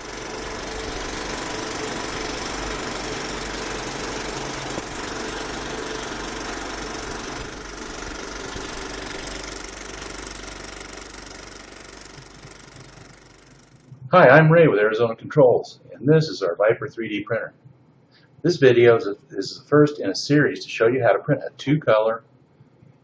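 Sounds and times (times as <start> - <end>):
faint rattle: 0.0 - 14.1.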